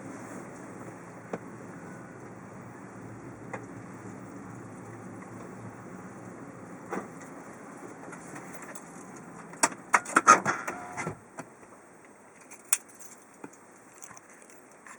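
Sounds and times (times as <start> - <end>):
car running: 0.0 - 11.4.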